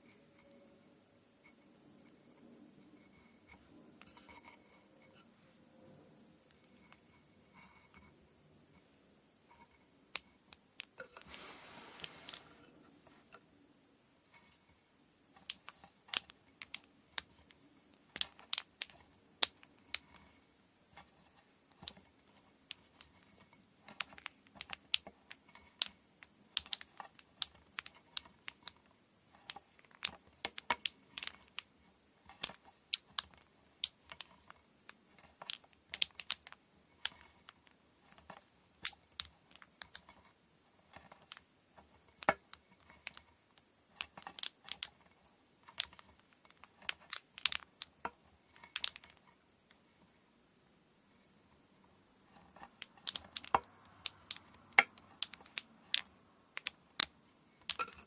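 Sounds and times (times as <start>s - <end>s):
small hard objects clicking: 15.4s - 17.3s, 17.9s - 20.1s, 23.8s - 31.7s, 32.3s - 40.2s, 40.9s - 49.2s, 52.3s - 58.0s.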